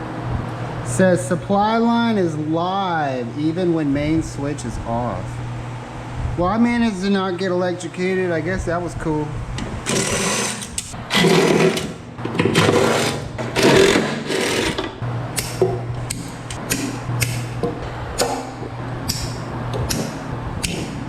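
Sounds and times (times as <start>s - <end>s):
steady low hum: 0.0s - 21.0s
tools and metal parts clattering: 9.8s - 15.0s.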